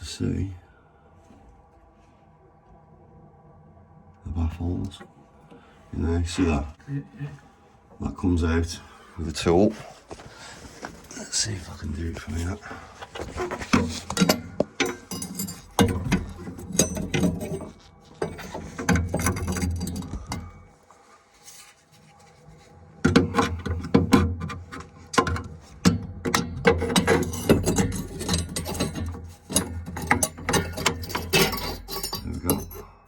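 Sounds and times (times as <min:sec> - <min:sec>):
tool clinking and scraping metal: 0:09.7 - 0:20.7, 0:21.4 - 0:33.0.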